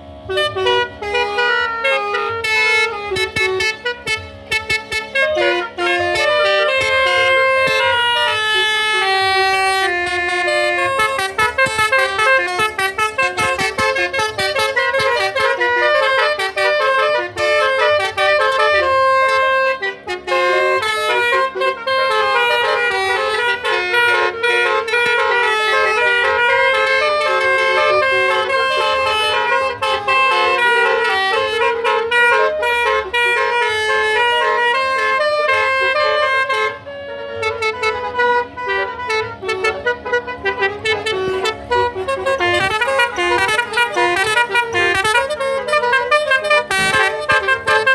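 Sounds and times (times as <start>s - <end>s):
musical car horns playing tunes: 0.0s - 47.9s.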